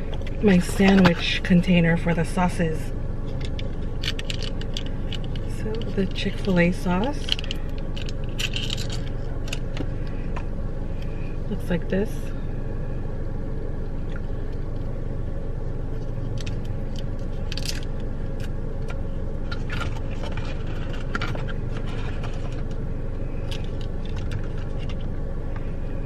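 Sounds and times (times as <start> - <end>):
car interior rumble: 0.0 - 26.0.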